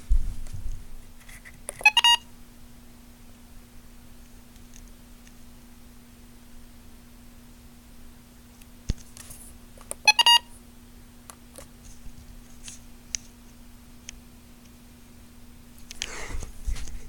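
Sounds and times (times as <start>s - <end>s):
low electrical hum: 0.0s - 17.0s
short electronic beeps: 1.8s - 2.2s, 10.1s - 10.4s.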